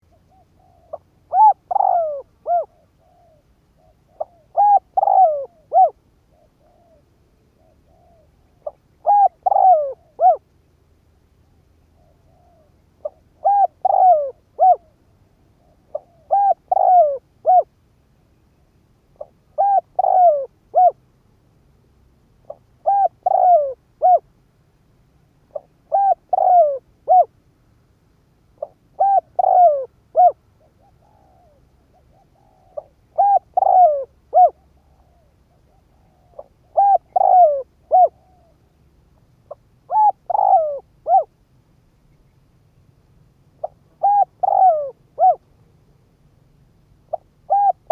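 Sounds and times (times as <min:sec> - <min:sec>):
dove cooing: 0:00.0 - 0:10.5, 0:11.8 - 0:17.7, 0:19.2 - 0:21.0, 0:22.4 - 0:24.3, 0:25.5 - 0:27.4, 0:28.6 - 0:38.7, 0:39.4 - 0:41.4, 0:43.6 - 0:45.5, 0:47.0 - 0:47.9.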